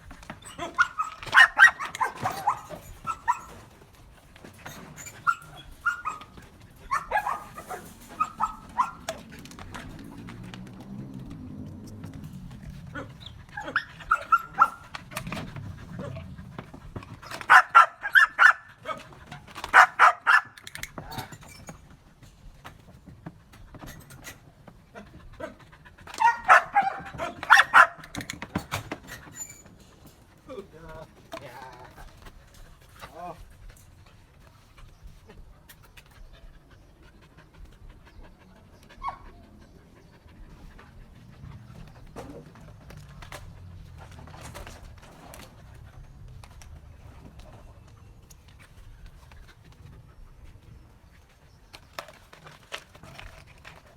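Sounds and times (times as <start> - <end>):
dog panting: 0.0 - 20.0, 21.5 - 53.9
dog yipping: 0.4 - 3.7, 4.7 - 9.8, 12.9 - 15.1, 17.2 - 19.0, 19.6 - 21.7, 26.1 - 28.2, 38.9 - 39.4
dog barking sharply: 0.8 - 3.5, 6.9 - 9.1, 17.5 - 18.7, 19.7 - 20.6, 26.2 - 28.1
dog squeak: 13.6 - 14.8.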